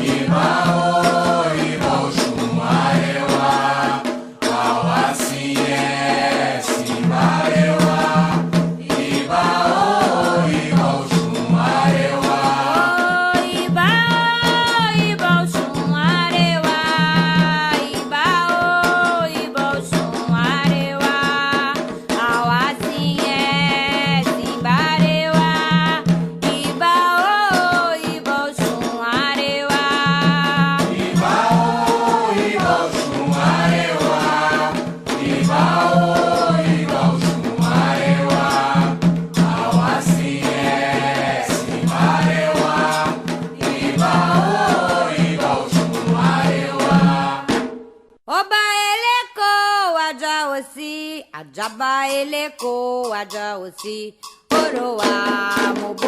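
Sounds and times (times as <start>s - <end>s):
voices singing a chant: 0.0s - 47.6s
steady percussion: 0.0s - 48.2s, 51.5s - 56.0s
shaker rattling: 12.7s - 45.4s, 51.6s - 56.0s.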